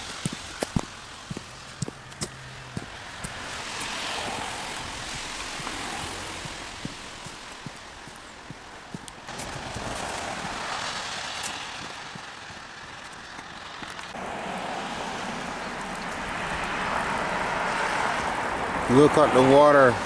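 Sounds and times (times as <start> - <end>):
meltwater dripping from trees: 0.0 - 14.2.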